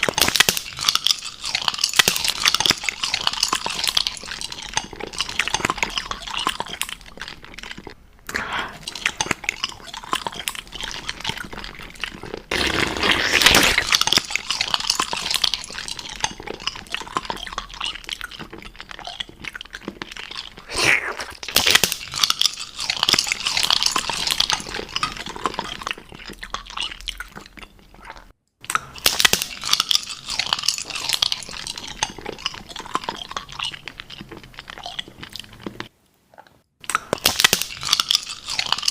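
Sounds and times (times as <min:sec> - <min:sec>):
crunching and chewing candy: 0:00.0 - 0:38.9.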